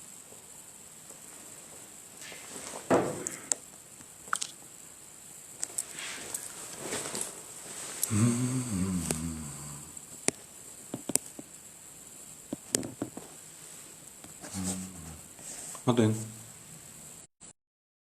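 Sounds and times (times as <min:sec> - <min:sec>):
man humming: 0:08.0 - 0:10.1, 0:14.4 - 0:15.3
microphone clicks and taps: 0:10.3 - 0:11.5, 0:12.5 - 0:13.2.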